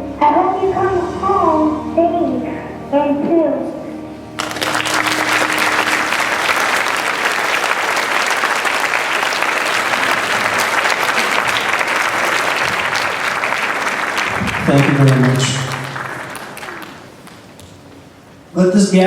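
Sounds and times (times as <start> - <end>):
audience applauding: 4.4 - 18.1.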